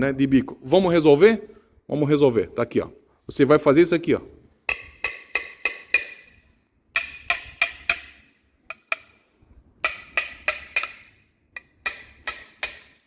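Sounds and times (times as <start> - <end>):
sharp metallic taps on tube: 4.7 - 13.0.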